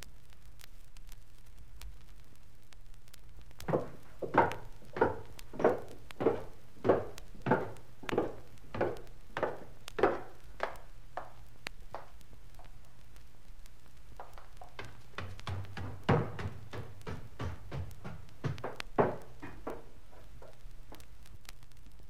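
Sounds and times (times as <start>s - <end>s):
record surface clicks: 0.0s - 17.1s, 17.8s - 22.0s
record hiss: 0.0s - 22.0s
footsteps on stairs: 3.6s - 12.9s, 14.2s - 21.1s.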